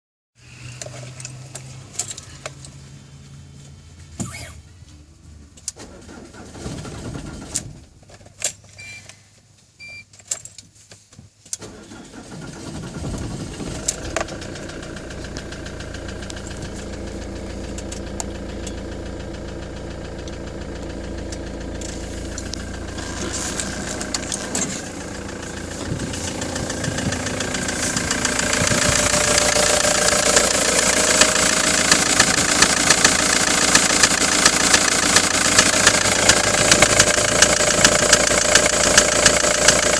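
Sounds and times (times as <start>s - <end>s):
short beeps: 8.8s - 9.1s, 9.8s - 10.1s
diesel engine idling: 11.7s - 39.9s
engine knocking: 12.2s - 39.9s.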